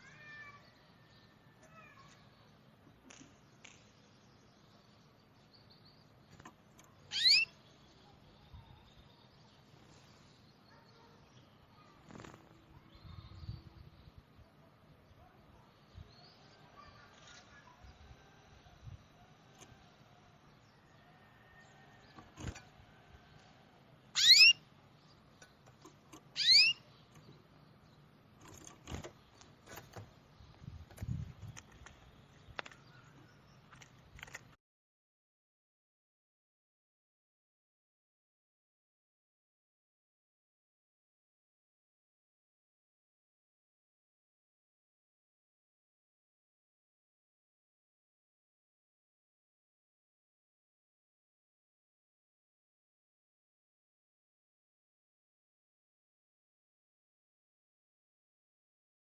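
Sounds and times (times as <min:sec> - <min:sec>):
small birds calling: 0:00.0 - 0:34.6
upward-sweeping bird call: 0:07.1 - 0:07.6, 0:24.2 - 0:24.6, 0:26.4 - 0:26.8.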